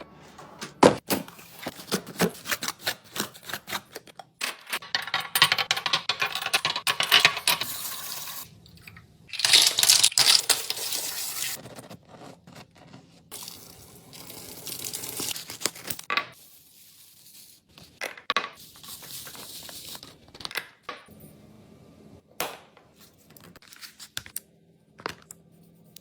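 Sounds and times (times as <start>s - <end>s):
small hard items clattering: 9.3s - 11.8s.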